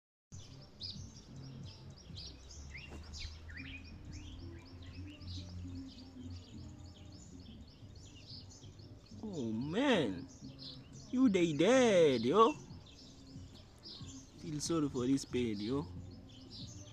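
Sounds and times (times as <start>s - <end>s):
small bird chirping: 0.4s - 16.9s.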